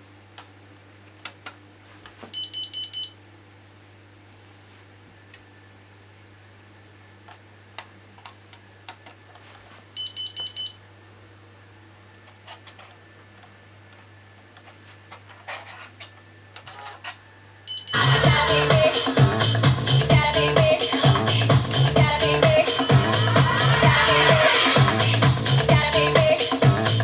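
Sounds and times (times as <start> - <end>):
electronic dance music: 18.0 - 27.0.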